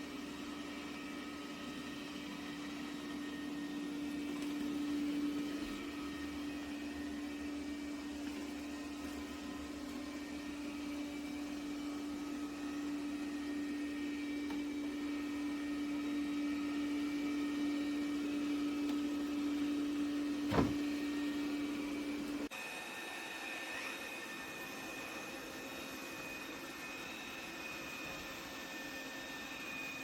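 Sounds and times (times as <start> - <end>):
robot vacuum humming: 0.0 - 29.9
short knock: 20.5 - 21.0.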